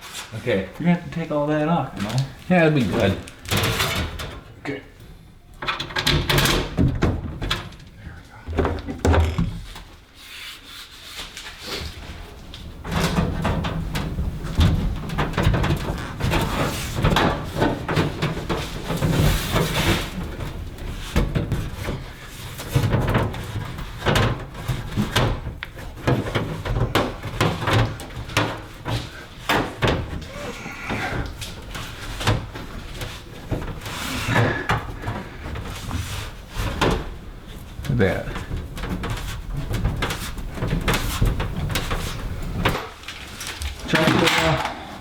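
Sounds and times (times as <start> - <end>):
workshop knocks and bangs: 5.6 - 10.0, 12.0 - 43.0.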